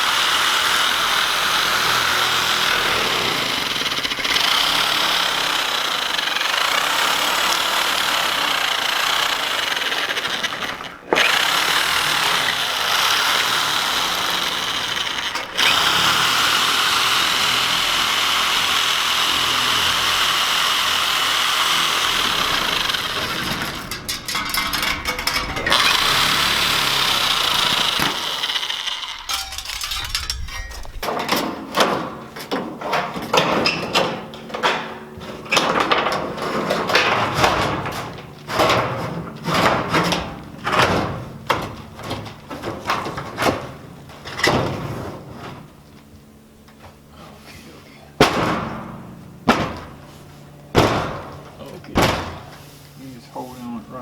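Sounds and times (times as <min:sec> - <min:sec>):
power tool cutting sheet metal: 0:00.0 - 0:31.1
clattering and knocks: 0:22.1 - 0:46.0, 0:48.2 - 0:50.1, 0:50.7 - 0:52.6.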